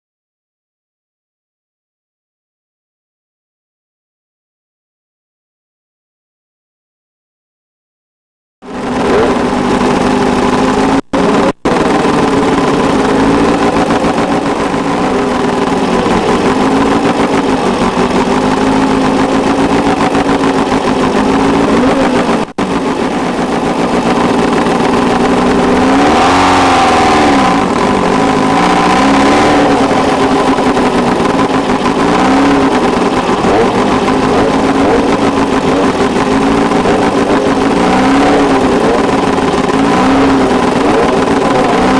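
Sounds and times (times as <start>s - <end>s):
race vehicle engines running hard: 8.6s - 41.9s.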